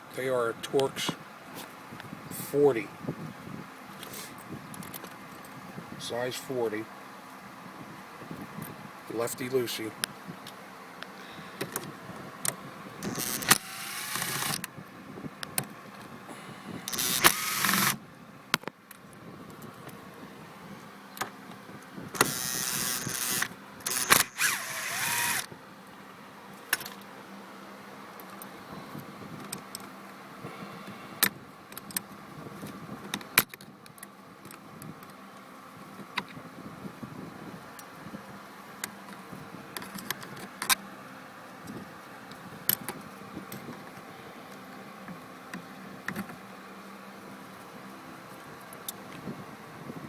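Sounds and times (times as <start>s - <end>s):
driver rasping on bolts: 13.0s - 14.7s, 16.8s - 18.0s.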